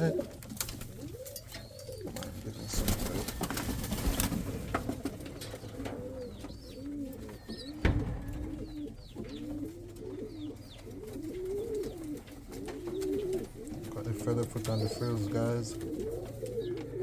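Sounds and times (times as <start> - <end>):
pigeons cooing: 0.0 - 17.0
sharp knock: 7.8 - 8.8.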